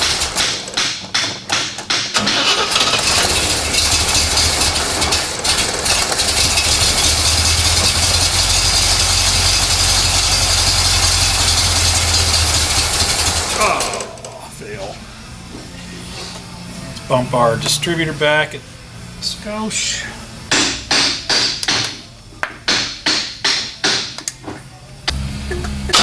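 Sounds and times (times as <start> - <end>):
engine cranking on starter: 0.0 - 14.4
engine running steadily: 0.0 - 20.6, 25.1 - 26.0.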